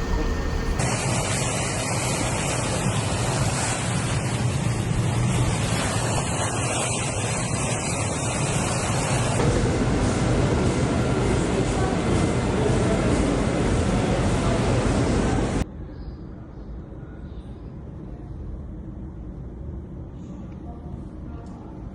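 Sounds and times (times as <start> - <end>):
heavy rain: 0.0 - 15.6.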